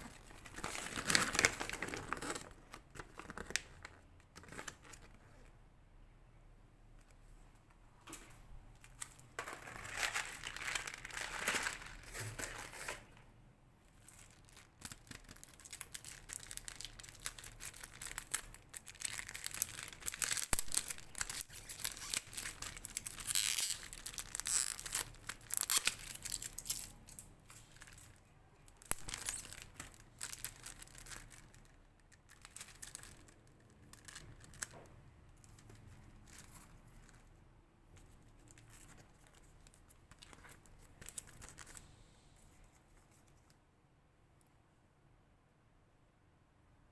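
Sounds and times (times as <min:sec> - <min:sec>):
packaging tearing and crinkling: 0:00.0 - 0:05.1, 0:09.5 - 0:13.1, 0:14.2 - 0:27.0, 0:28.9 - 0:34.8.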